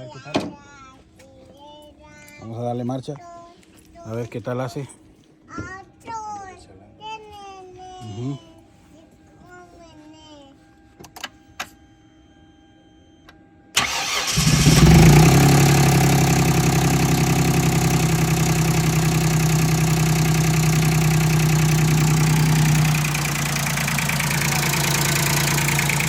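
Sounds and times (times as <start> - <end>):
car engine starting and idling: 13.8 - 26.0.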